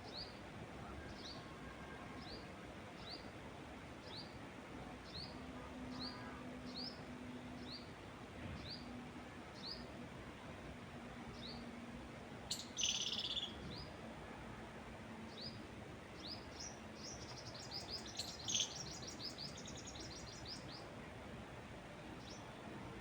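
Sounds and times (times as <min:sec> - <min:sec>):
wind in trees: 0:00.0 - 0:23.0
small songbirds chirping: 0:12.5 - 0:14.0, 0:15.3 - 0:21.0, 0:22.1 - 0:22.6.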